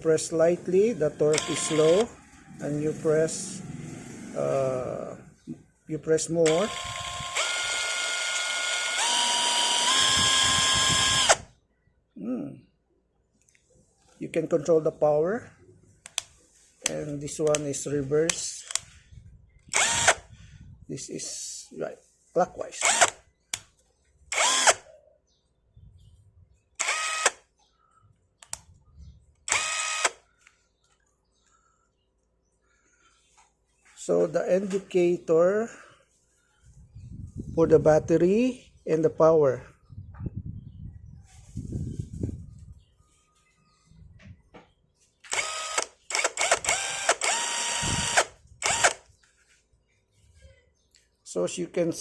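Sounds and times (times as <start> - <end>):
impact wrench motor whine: 1.3 - 2.2, 6.4 - 11.5, 19.7 - 20.2, 22.8 - 23.2, 24.3 - 24.8, 26.8 - 27.4, 29.5 - 30.2, 45.3 - 49.0.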